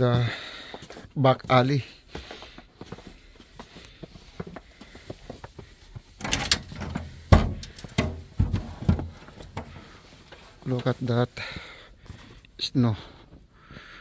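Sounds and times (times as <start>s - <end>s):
door rustling and rattling: 6.2s - 9.8s
sharp knocks: 7.3s - 9.2s.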